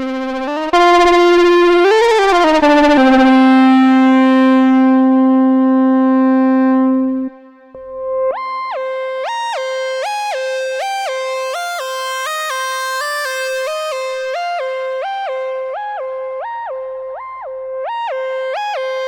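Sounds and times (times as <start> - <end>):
synthesizer lead melody: 0.0 - 9.0.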